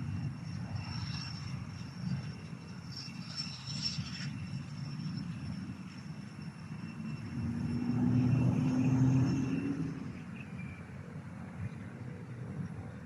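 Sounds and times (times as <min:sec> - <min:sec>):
engine drone passing: 0:03.3 - 0:10.4.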